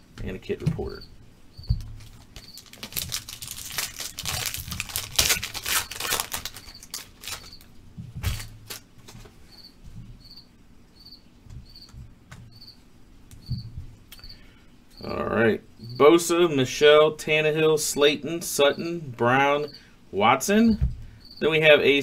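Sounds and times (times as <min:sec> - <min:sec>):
wrapper tearing and crinkling: 0:01.9 - 0:08.9
faint high chirp: 0:15.8 - 0:16.1.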